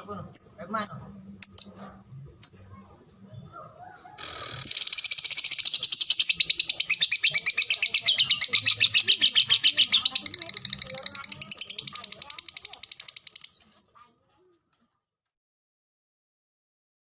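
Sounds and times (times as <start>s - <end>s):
lovebird chattering trill: 4.2s - 13.7s
lovebird chirps: 4.2s - 13.7s.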